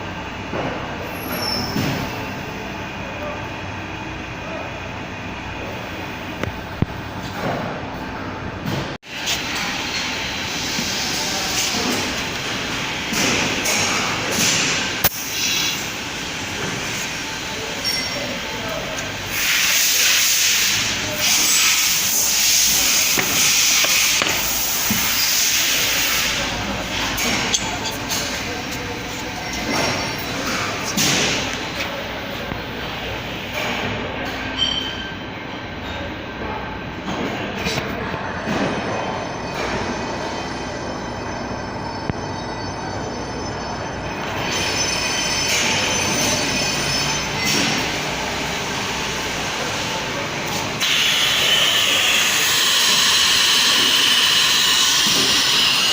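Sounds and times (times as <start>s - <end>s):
welding machine hissing: 14.8s - 17.5s, 19.0s - 31.8s, 50.6s - 55.9s
welding machine running with whine: 50.6s - 55.9s.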